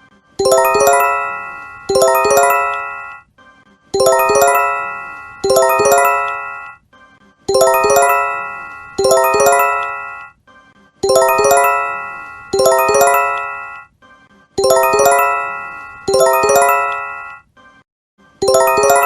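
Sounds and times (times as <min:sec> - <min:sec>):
bell-like alert chime: 0:00.4 - 0:03.2, 0:04.0 - 0:06.8, 0:07.5 - 0:10.3, 0:11.0 - 0:13.9, 0:14.6 - 0:17.4, 0:18.4 - 0:19.0.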